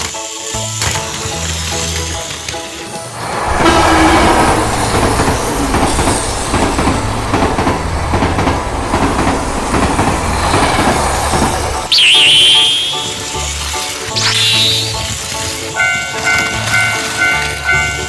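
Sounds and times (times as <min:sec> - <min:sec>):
toy train rattling on plastic track: 0:00.0 - 0:04.2, 0:15.0 - 0:18.0.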